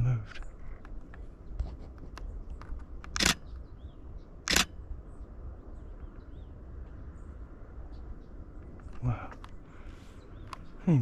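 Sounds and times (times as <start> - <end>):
camera shutter clicking: 3.1 - 3.4, 4.5 - 4.7.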